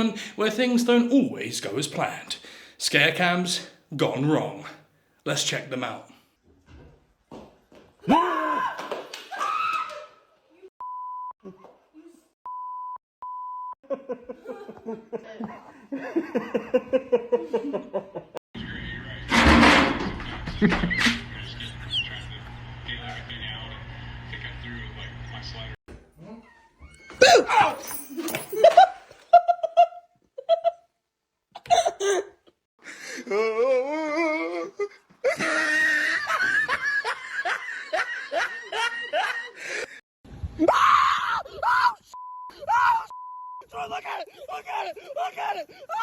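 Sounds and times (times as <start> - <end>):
short steady beep: 12.5 - 13.8, 43.1 - 43.6
person laughing hard: 35.2 - 40.0
harsh drawn-out yell: 40.6 - 46.0.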